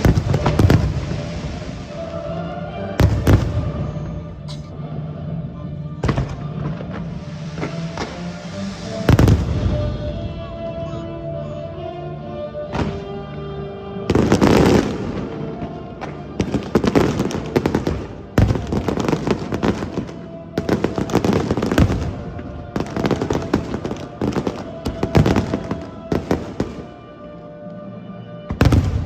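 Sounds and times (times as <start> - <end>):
fireworks bangs and crackling: 0.0 - 2.3, 2.9 - 4.2, 6.0 - 10.6, 14.1 - 27.1, 28.5 - 29.0
background music: 0.0 - 29.0.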